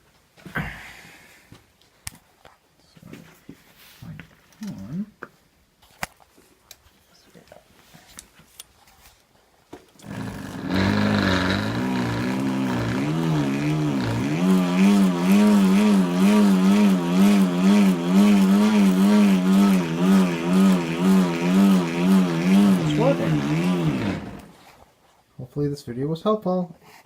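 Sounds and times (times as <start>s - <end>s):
bicycle wheel humming: 10.0s - 24.6s.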